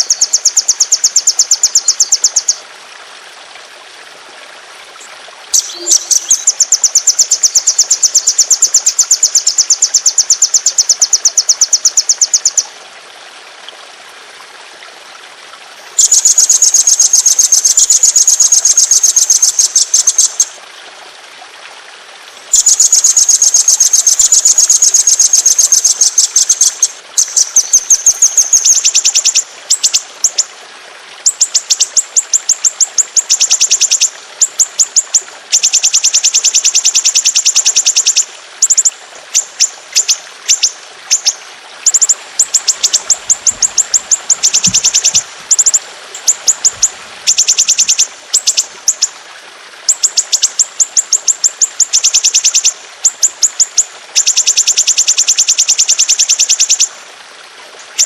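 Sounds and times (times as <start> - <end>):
songbird rolling trills: 41.9 - 49.0.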